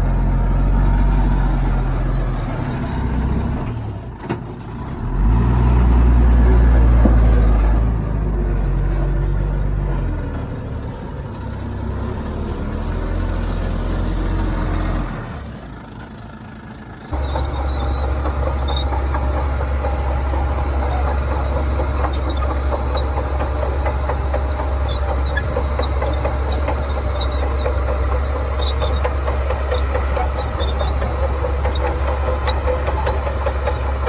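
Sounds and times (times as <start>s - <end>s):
diesel engine drone: 0.0s - 34.0s
rapid mechanical clatter: 17.1s - 34.0s.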